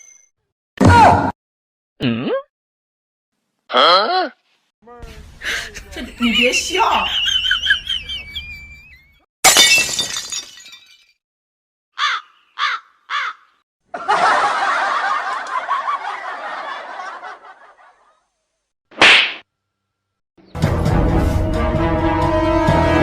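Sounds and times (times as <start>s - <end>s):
loud shattering crash: 9.4s - 10.6s.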